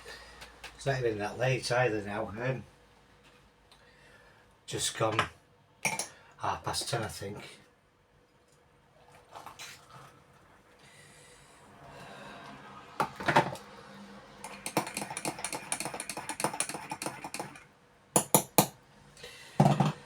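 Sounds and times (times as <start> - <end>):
spoon clinking on a cup: 14.4 - 17.6.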